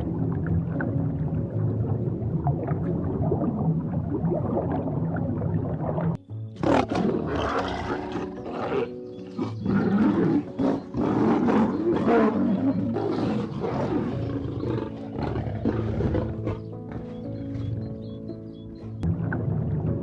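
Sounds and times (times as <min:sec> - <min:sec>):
background music with held notes: 0:00.0 - 0:20.0
big cat roaring: 0:06.6 - 0:17.7.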